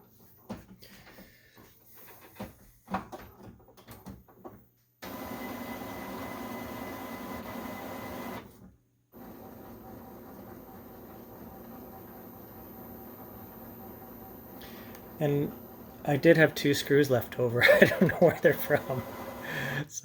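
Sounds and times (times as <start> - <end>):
printer motor hum: 5.0 - 8.5, 9.1 - 19.8.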